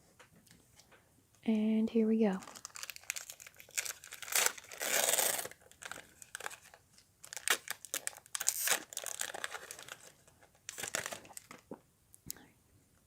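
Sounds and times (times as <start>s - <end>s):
foil wrapper crinkling and tearing: 2.4s - 11.8s.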